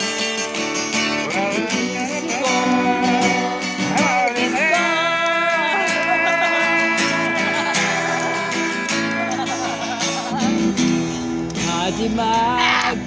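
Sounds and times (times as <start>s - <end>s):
acoustic guitar strumming: 0.0s - 13.0s
person singing: 1.2s - 10.0s, 11.6s - 13.0s.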